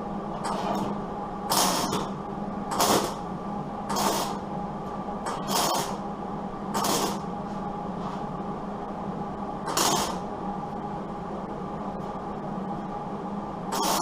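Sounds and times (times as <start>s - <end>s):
steady low hum: 0.0s - 14.0s
welding crackling hisses: 1.5s - 1.9s, 3.9s - 4.4s, 5.4s - 6.0s, 6.8s - 7.2s, 9.7s - 10.2s.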